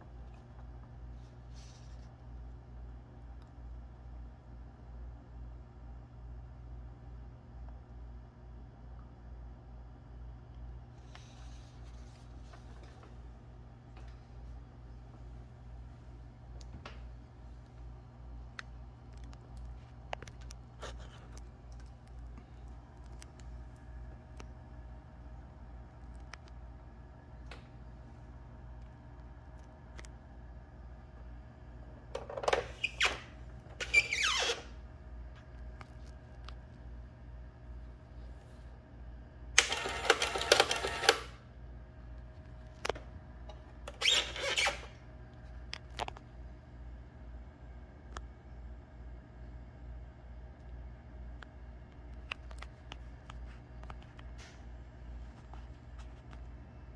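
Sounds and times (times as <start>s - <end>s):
printing calculator clatter: 39.6s - 41.3s.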